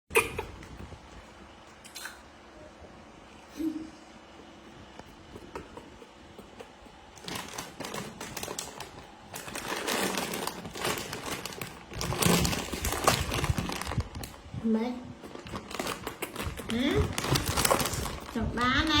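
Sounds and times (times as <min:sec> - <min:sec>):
plastic packaging crinkling: 0:07.2 - 0:14.6, 0:15.2 - 0:19.0.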